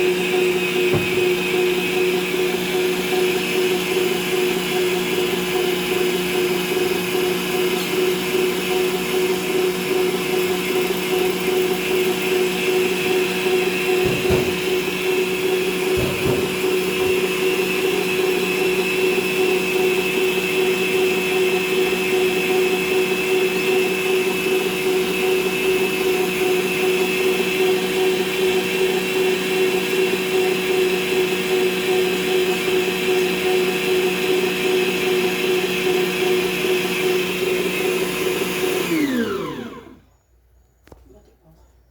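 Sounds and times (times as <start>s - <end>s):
kitchen appliance motor whining: 0.0s - 40.0s
short knocks: 0.8s - 1.4s, 14.0s - 14.9s, 15.9s - 17.2s.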